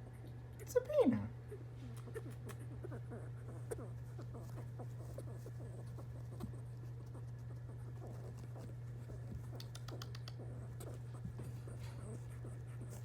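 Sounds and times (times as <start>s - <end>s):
steady low hum: 0.0s - 13.0s
squirrel scratching: 1.4s - 13.0s
squirrel clicking: 1.9s - 11.3s.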